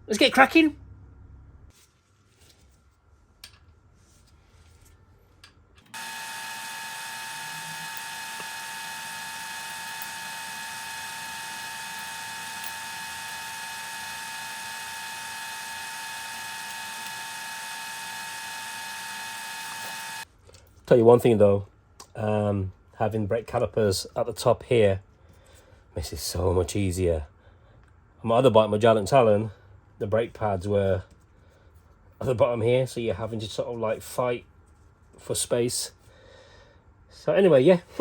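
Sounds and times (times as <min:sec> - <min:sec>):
small electric motor whining: 0:05.9 - 0:20.3.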